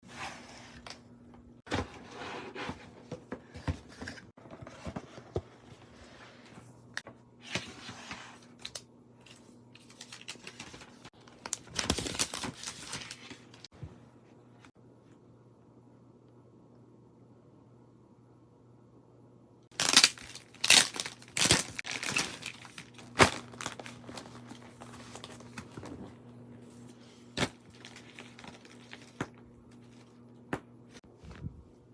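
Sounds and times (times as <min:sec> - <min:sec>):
faint steady hum: 0:00.1 - 0:31.9
packaging rustling and tearing: 0:07.5 - 0:13.7, 0:19.7 - 0:26.1, 0:27.4 - 0:30.1.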